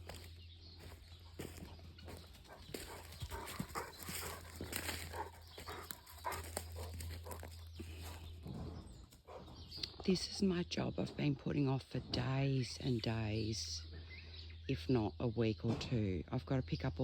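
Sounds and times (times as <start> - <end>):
dogs scuffing and clicking: 2.0 - 7.7.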